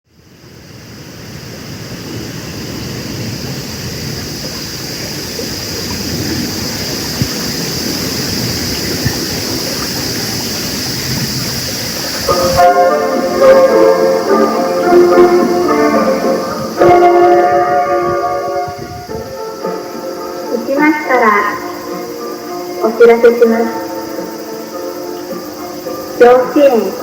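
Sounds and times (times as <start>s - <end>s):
high-pitched drone: 7.1s - 27.0s
loudspeaker warning chime: 12.1s - 19.6s, 20.2s - 22.0s, 22.7s - 24.5s, 25.8s - 27.0s.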